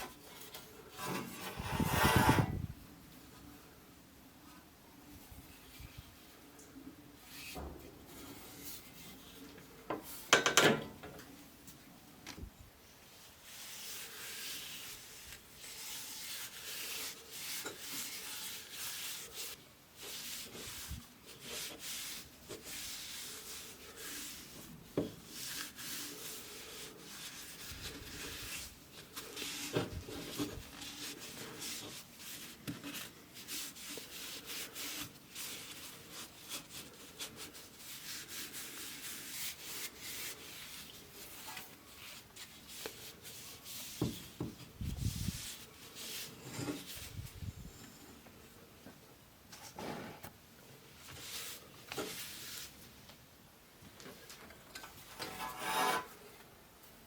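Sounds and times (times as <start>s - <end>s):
sandpaper rubbing wood: 1.1s - 2.6s, 13.4s - 47.2s.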